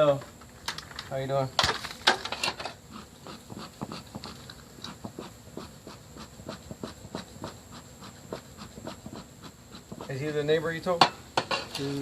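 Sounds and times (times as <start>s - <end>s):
dog panting: 2.9s - 10.4s.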